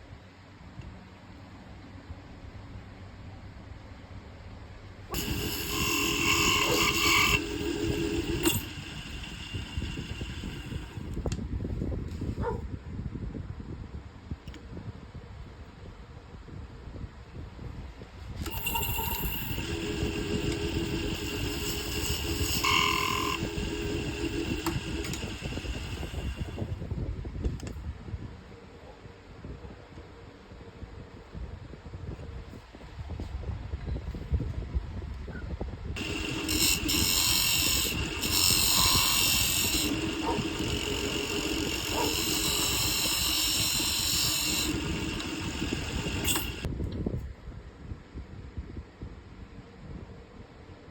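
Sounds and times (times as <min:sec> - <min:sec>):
wood lathe humming: 0:05.1 - 0:11.2, 0:18.4 - 0:26.8, 0:36.0 - 0:46.7
high whine: 0:05.1 - 0:11.3, 0:18.4 - 0:26.8, 0:36.0 - 0:46.7
hiss of wood being turned: 0:05.2 - 0:11.1, 0:18.5 - 0:26.7, 0:36.0 - 0:46.7.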